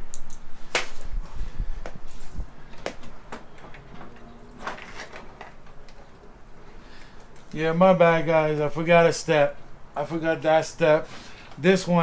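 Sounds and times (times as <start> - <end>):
motorcycle parts knocking and clicking: 2.6 - 6.2.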